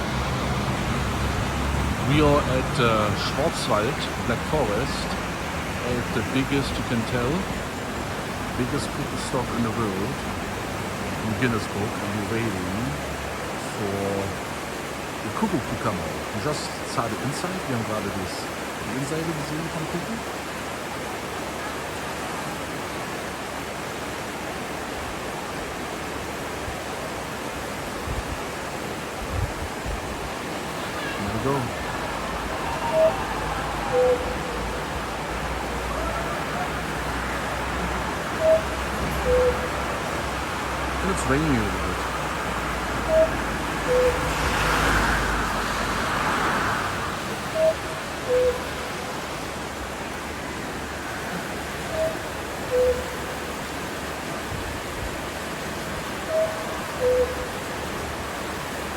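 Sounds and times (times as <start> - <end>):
steady rushing noise: 0.0 - 21.3, 24.9 - 57.0
steady hiss: 0.0 - 21.4
cuckoo clock calling: 2.0 - 5.2, 30.8 - 42.2, 42.9 - 44.7, 47.5 - 49.0, 51.2 - 53.5, 56.2 - 57.6
cuckoo clock two-note call: 31.0 - 34.9, 38.4 - 39.8, 43.0 - 44.3, 47.6 - 48.7, 51.9 - 53.2, 56.3 - 57.6.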